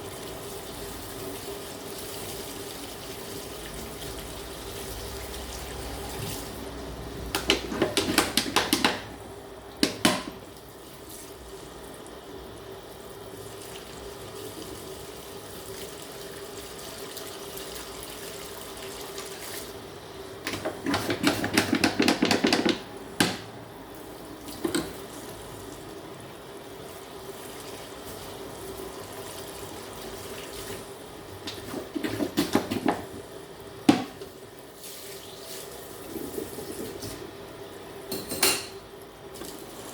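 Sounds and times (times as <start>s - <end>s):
tap water running into sink: 0.2s - 10.7s, 13.5s - 19.7s, 20.4s - 23.5s, 24.4s - 25.8s, 35.3s - 37.2s.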